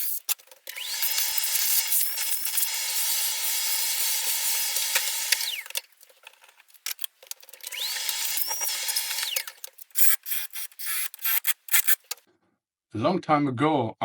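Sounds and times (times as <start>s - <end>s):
cordless drill motor: 0.0s - 5.8s, 7.6s - 12.2s.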